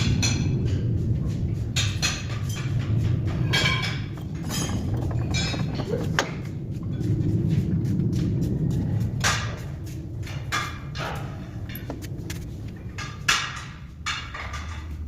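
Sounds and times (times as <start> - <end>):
steady low hum: 0.0 - 15.0
metal tools clinking: 3.4 - 6.2.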